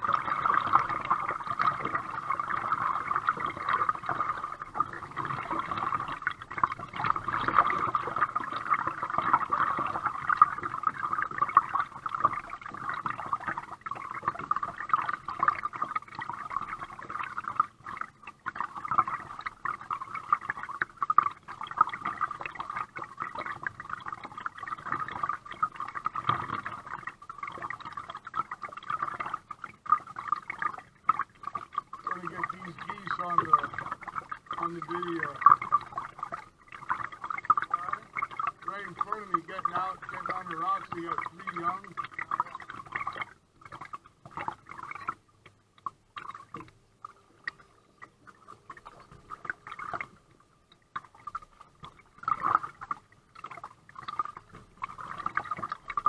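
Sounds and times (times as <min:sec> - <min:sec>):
water trickling around kayak: 0:00.0 - 0:56.0.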